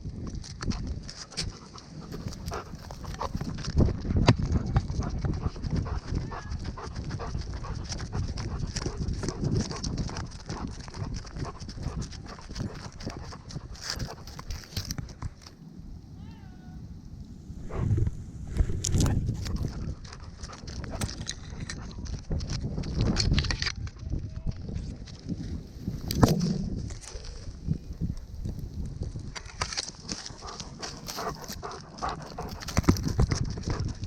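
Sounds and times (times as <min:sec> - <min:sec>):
rustling: 0:09.7 - 0:22.2, 0:25.1 - 0:33.7.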